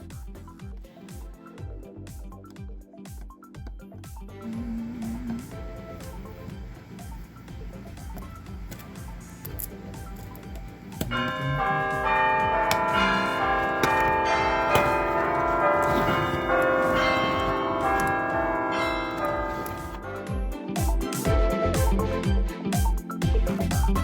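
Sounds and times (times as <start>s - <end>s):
music with bell-like chimes: 10.0s - 22.1s.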